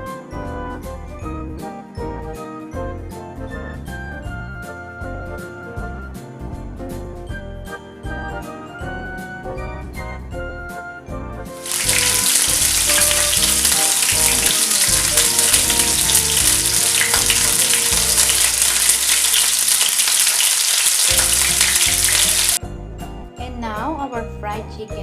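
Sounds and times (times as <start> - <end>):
background music: 0.0 - 25.0
chicken frying in hot oil: 11.6 - 22.6.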